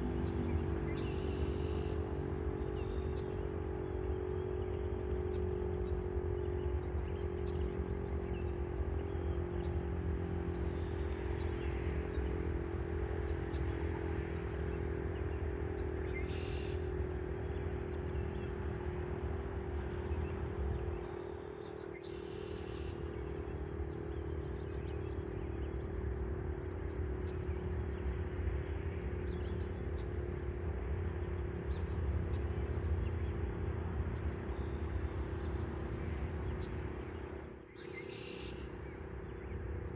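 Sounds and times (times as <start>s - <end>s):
low steady rumble: 0.0s - 39.9s.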